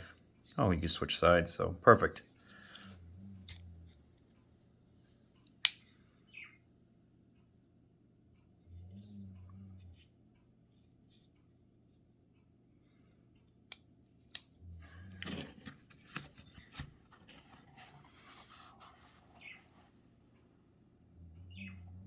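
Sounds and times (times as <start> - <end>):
rustling and scraping: 14.8 - 20.0.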